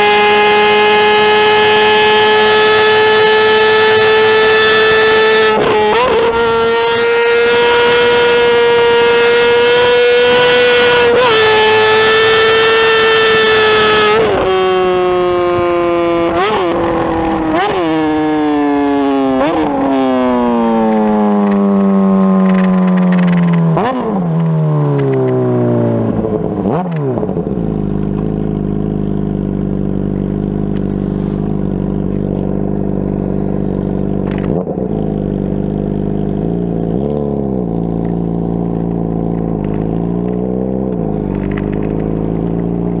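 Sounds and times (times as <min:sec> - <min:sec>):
motorcycle engine winding down: 0:00.1 - 0:43.0
motorcycle engine idling: 0:27.3 - 0:43.0.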